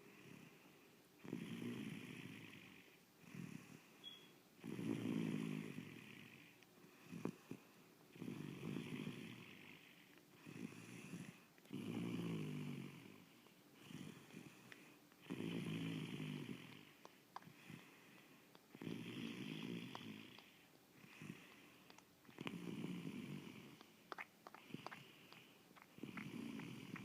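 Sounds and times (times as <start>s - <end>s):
quiet breaths: 0.0s - 27.0s
person snoring: 4.6s - 17.0s, 18.8s - 21.8s, 22.4s - 23.9s, 24.5s - 27.0s.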